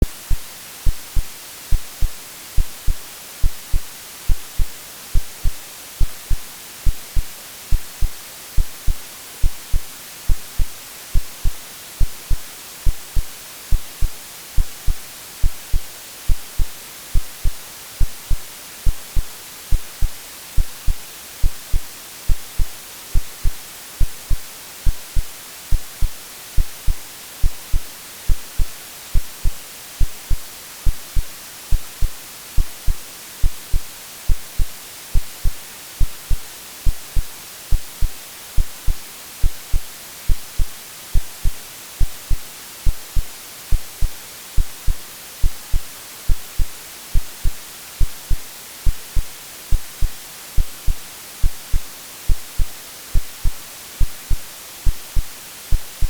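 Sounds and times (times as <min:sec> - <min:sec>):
soft heartbeat thumps: 0:00.0 - 0:56.0
white noise hiss: 0:00.0 - 0:56.0.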